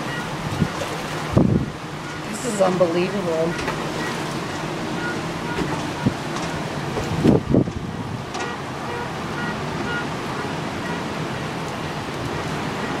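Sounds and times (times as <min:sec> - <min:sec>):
faint car alarm beeps: 0:00.0 - 0:00.8, 0:01.6 - 0:06.3, 0:08.4 - 0:13.0
floodwater rushing: 0:00.0 - 0:13.0
wind: 0:00.0 - 0:13.0.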